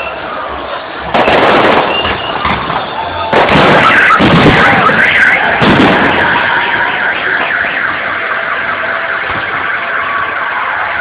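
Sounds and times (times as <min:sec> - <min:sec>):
crackle of bursting fireworks: 0:01.0 - 0:11.0
firework boom: 0:01.1 - 0:07.1.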